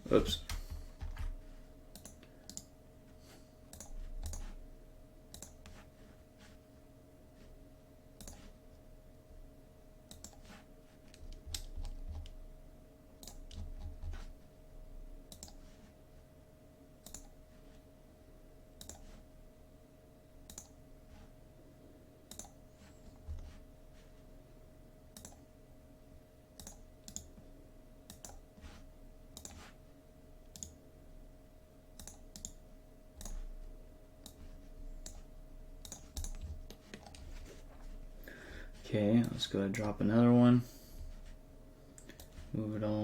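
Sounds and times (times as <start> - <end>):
faint hum: 0.0 - 43.0
computer mouse clicking: 0.5 - 2.7, 3.7 - 4.6, 5.3 - 5.8, 8.2 - 8.6, 10.1 - 12.4, 13.2 - 14.2, 15.3 - 15.6, 17.0 - 17.4, 18.8 - 19.1, 20.4 - 20.8, 22.3 - 22.6, 25.2 - 25.4, 26.6 - 27.4, 28.1 - 28.4, 29.3 - 29.7, 30.5 - 30.8, 32.0 - 32.6, 33.2 - 33.5, 34.2 - 37.3.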